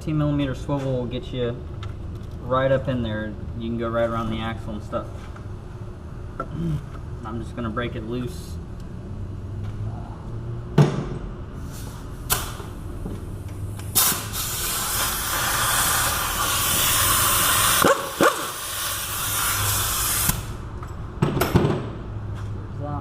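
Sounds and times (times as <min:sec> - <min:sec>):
air hissing: 0:11.6 - 0:13.0, 0:13.6 - 0:20.6.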